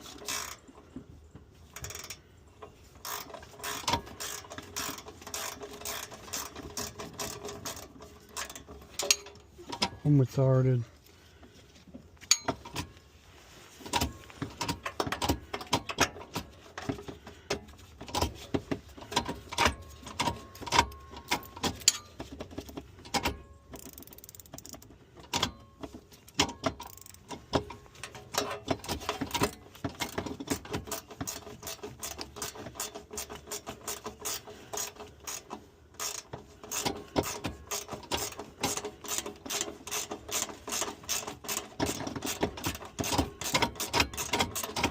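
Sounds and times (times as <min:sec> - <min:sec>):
ratchet wrench clicking: 0:00.1 - 0:00.6, 0:01.8 - 0:02.2, 0:03.0 - 0:09.4, 0:23.2 - 0:25.6, 0:26.3 - 0:27.3, 0:28.0 - 0:44.9.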